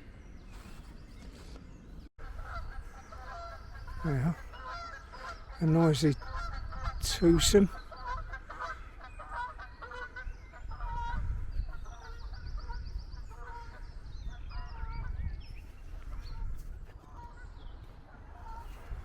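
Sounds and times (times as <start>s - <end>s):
geese honking: 2.2s - 13.8s.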